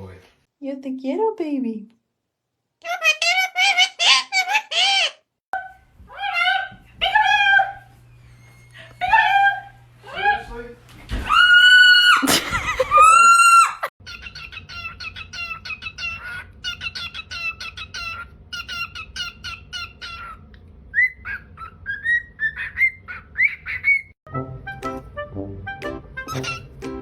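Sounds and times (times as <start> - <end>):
parrot chirps: 2.8 - 9.4, 14.0 - 24.2, 26.2 - 26.8
parrot whistled calls: 13.3 - 24.2, 26.2 - 26.8.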